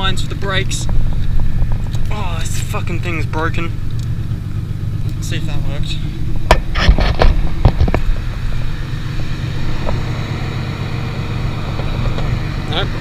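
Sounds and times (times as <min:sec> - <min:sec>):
car engine idling: 0:00.0 - 0:13.0
sharp clicks and knocks: 0:06.4 - 0:08.3, 0:11.6 - 0:12.4.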